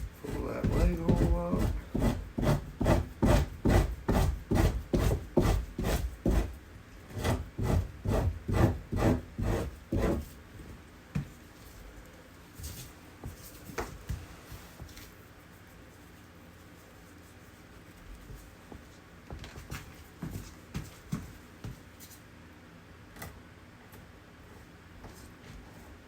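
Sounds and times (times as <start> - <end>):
blade scraping hide: 0.0 - 10.3.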